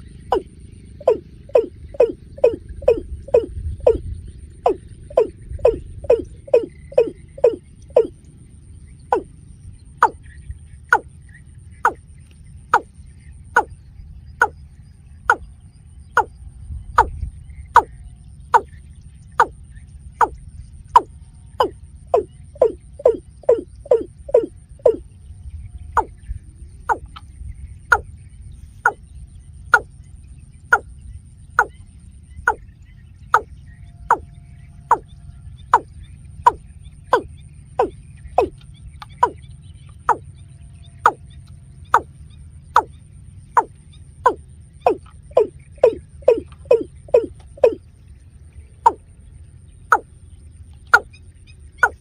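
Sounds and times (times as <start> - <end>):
bird calling short descending notes: 0.0 - 8.2, 36.5 - 39.4
steady low rumble: 0.0 - 52.0.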